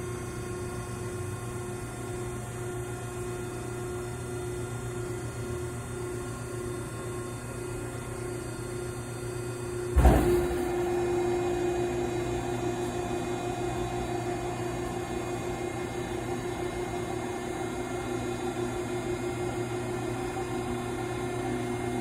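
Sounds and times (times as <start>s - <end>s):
sudden clunk: 9.9s - 11.0s.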